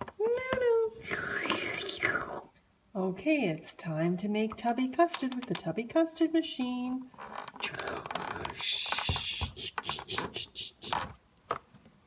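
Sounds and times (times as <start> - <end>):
plastic toy clicking and scraping: 5.0 - 5.7, 7.2 - 11.2.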